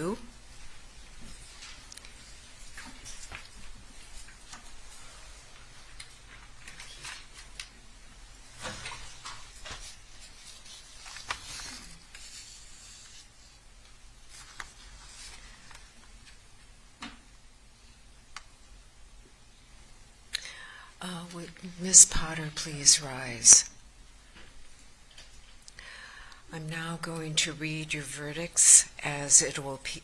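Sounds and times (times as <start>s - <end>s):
low room hiss: 0.0s - 30.0s
paper rustling: 6.0s - 7.7s, 8.6s - 16.4s.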